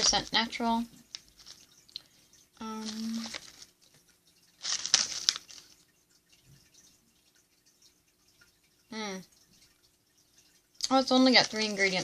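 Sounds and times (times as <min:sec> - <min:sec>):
snack bag crinkling: 0:01.1 - 0:02.1, 0:02.7 - 0:04.0, 0:04.6 - 0:05.8.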